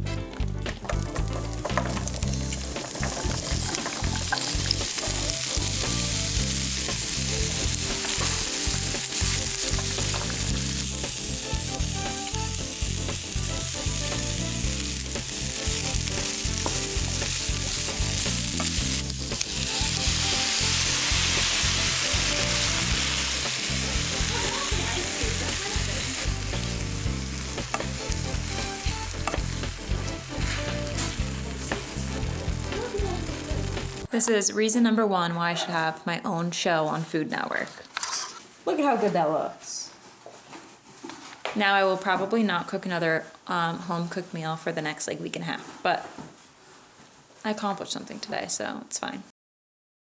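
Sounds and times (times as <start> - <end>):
food sizzling in a pan: 1.4 - 34.1.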